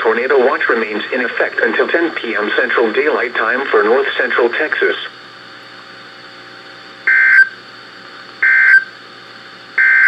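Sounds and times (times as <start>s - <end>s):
faint radio hiss: 0.0s - 5.3s.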